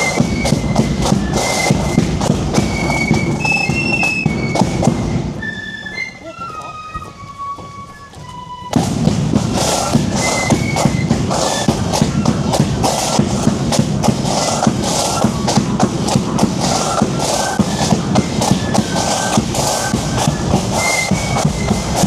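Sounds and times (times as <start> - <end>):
faint melody notes: 0.0 - 13.0
snare drums marching rhythm: 0.0 - 22.0.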